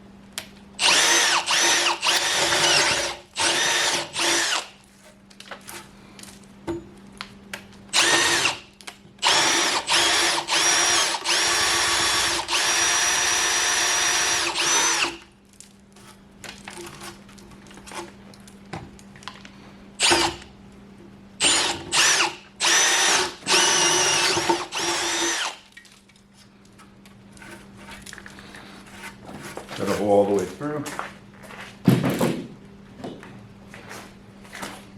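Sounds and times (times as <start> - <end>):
electric drill boring into wood: 0.8 - 4.7, 7.9 - 8.6, 9.2 - 15.2, 20.0 - 20.4, 21.4 - 25.6.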